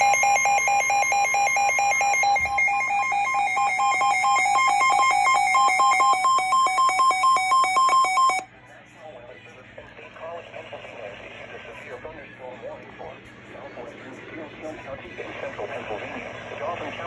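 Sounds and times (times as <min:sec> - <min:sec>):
weather radio alert beeping: 0:00.0 - 0:08.4.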